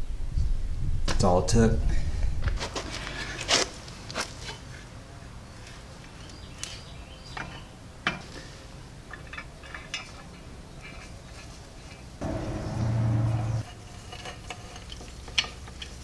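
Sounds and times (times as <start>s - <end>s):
steady low hum: 12.2s - 13.6s.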